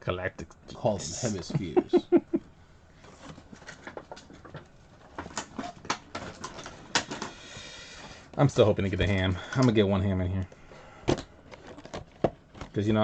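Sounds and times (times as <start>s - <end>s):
plastic packaging crinkling: 3.0s - 9.2s, 11.3s - 13.0s.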